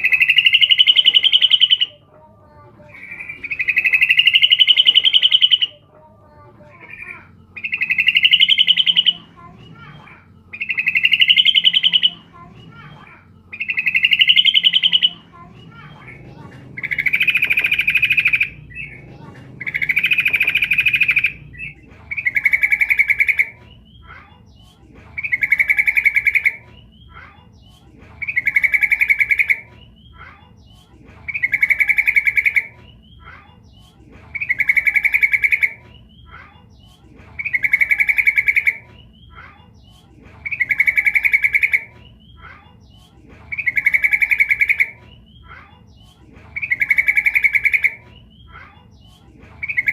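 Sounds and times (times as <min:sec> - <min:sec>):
bulbul calling: 0:00.0 - 0:05.8, 0:06.6 - 0:27.6, 0:28.2 - 0:30.3, 0:31.2 - 0:49.9.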